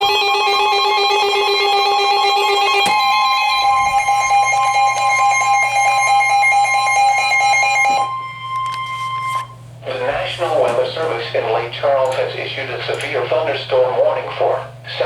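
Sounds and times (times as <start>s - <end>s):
shrill two-tone alarm: 0.0s - 9.6s.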